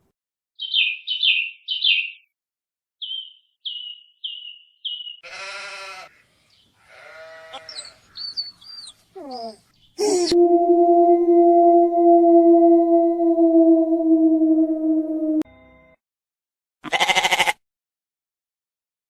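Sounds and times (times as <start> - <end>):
buzzy bleat-like animal call: 5.2 - 6.2, 6.8 - 8.0, 16.8 - 17.6
wavering animal call: 7.0 - 15.4.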